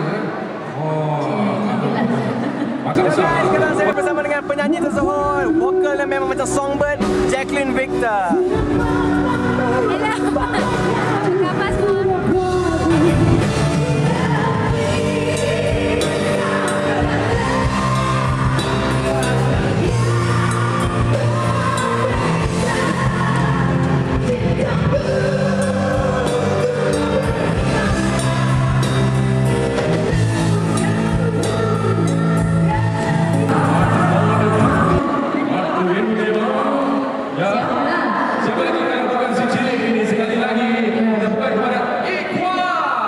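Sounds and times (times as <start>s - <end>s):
band accompaniment: 3.4s - 35.2s
woman singing: 8.3s - 35.5s.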